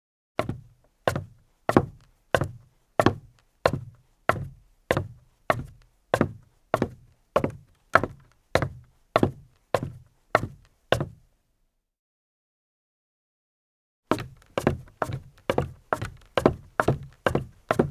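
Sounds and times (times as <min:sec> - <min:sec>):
boot footsteps on deck: 0:00.4 - 0:11.2, 0:14.1 - 0:17.9.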